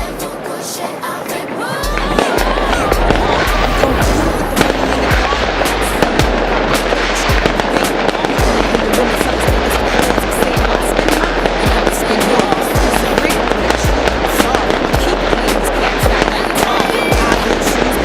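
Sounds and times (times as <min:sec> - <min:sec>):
music playing: 0:00.0 - 0:18.0
fireworks bangs and crackling: 0:01.2 - 0:18.0.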